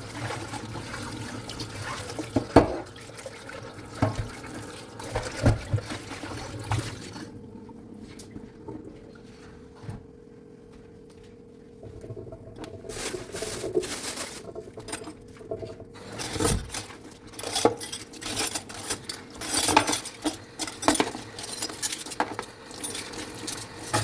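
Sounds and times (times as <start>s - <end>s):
dishes and cutlery clattering: 13.6s - 24.0s.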